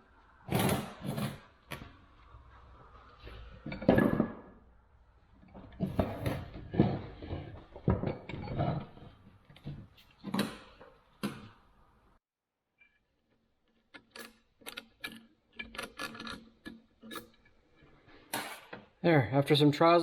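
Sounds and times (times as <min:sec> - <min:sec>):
metal clanks and rattles: 0:05.5 - 0:11.4.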